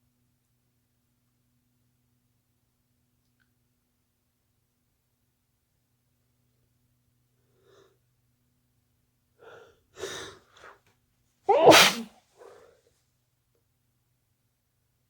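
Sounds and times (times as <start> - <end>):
person sneezing: 11.5 - 12.1
quick catching breaths: 11.5 - 12.7.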